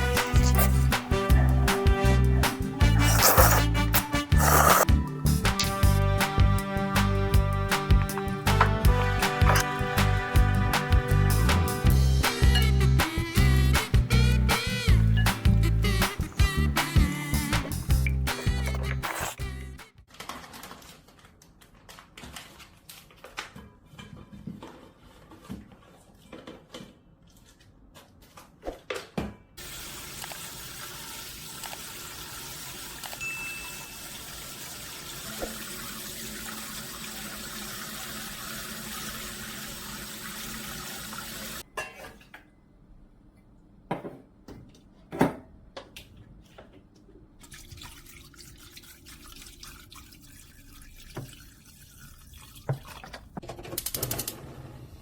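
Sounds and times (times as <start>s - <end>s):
tap water running into sink: 29.6s - 41.6s, 47.4s - 53.4s.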